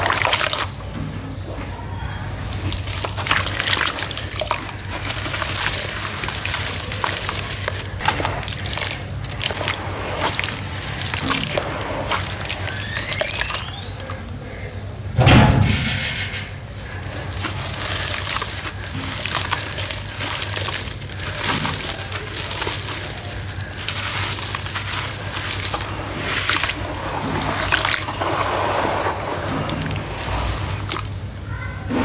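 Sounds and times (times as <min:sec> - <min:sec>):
chunks crumbling and fizzing in water: 0:00.0 - 0:32.0
deep plunk in water: 0:15.2 - 0:16.7.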